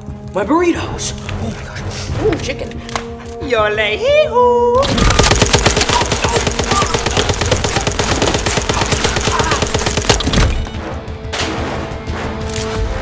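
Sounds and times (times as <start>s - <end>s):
background music: 0.0s - 13.0s
rapid blaster shots: 4.8s - 10.8s.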